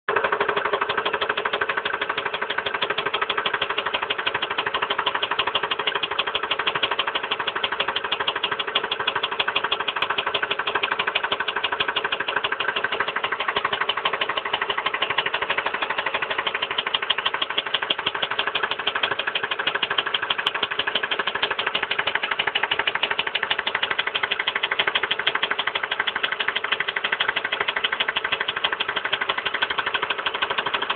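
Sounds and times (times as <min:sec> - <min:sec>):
car engine running with knock: 0:00.1 - 0:30.9.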